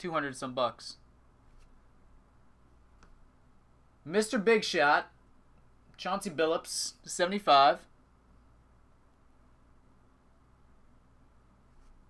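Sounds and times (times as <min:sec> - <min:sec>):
faint low hum: 0:00.0 - 0:12.0
faint click: 0:03.0 - 0:03.2.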